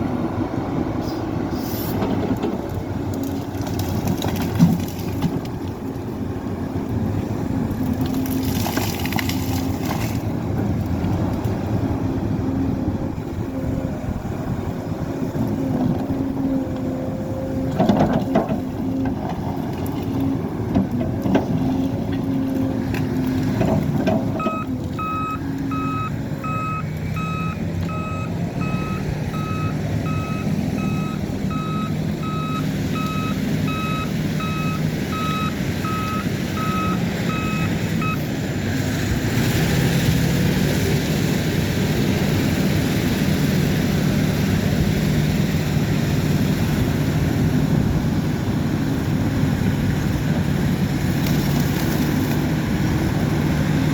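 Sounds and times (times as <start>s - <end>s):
diesel engine running: 0.0s - 53.9s
backup alarm beeping: 24.4s - 38.2s.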